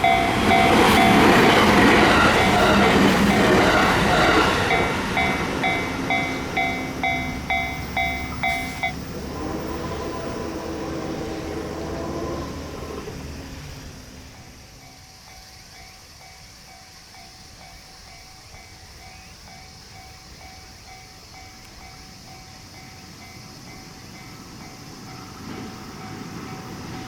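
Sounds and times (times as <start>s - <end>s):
level crossing warning bell: 0.0s - 12.8s
train rumble: 0.0s - 27.0s
level crossing bell dinging: 4.3s - 9.1s.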